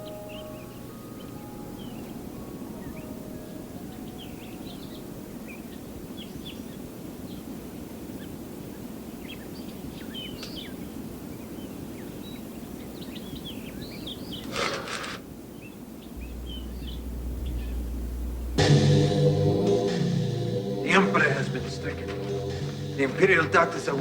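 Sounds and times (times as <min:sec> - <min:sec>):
birds chirping: 0:00.0 - 0:07.4, 0:15.6 - 0:24.0
low background hiss and rumble: 0:16.2 - 0:24.0.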